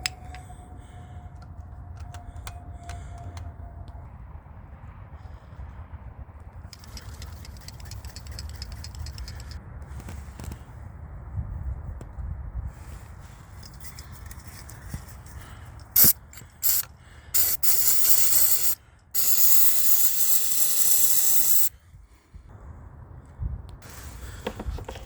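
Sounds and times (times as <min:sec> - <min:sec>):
aerosol can spraying: 0:16.0 - 0:21.7.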